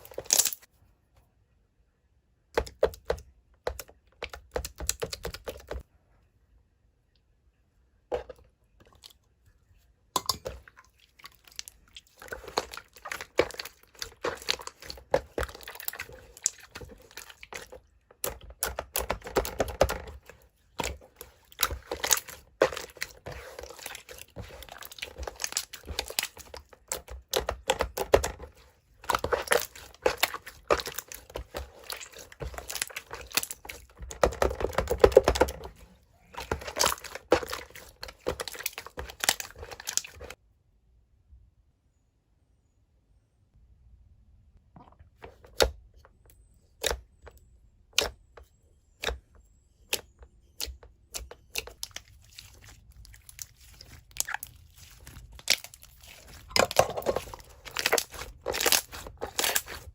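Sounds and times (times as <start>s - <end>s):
slime squishing and crackling: 0.0s - 0.7s, 10.4s - 40.4s, 49.8s - 59.9s.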